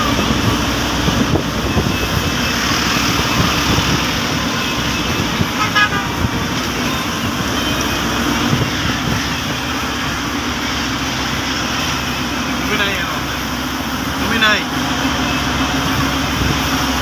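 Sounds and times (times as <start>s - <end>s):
vehicle traffic noise: 0.0s - 17.0s
short horn toot: 4.6s - 9.5s.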